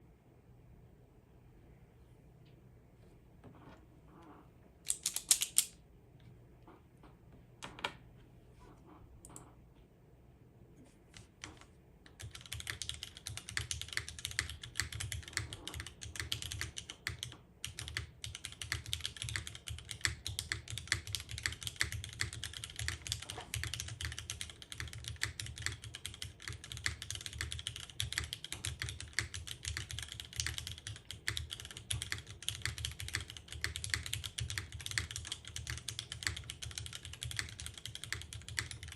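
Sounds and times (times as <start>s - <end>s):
mechanical keyboard typing: 4.9s - 5.8s, 11.2s - 38.9s.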